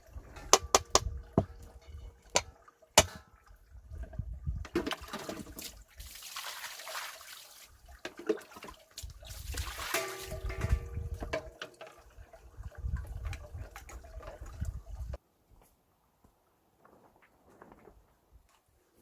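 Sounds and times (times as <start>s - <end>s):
water splashing and running: 0.0s - 15.2s.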